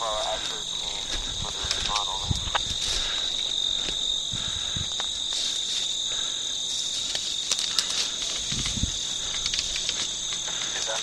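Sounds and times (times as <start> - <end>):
crickets chirping: 0.0 - 11.0
sharp clicks: 1.6 - 2.7, 7.1 - 11.0.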